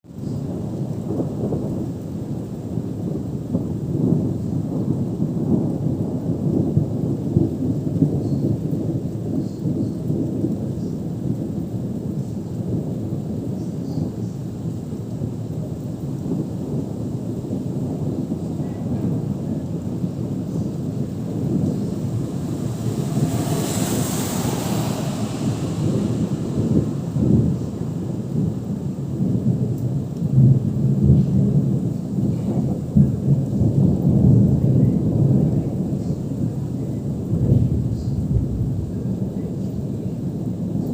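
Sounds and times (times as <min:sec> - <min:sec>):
low continuous thunder rumble: 0:00.0 - 0:40.9
steady downpour of rain: 0:00.0 - 0:40.9.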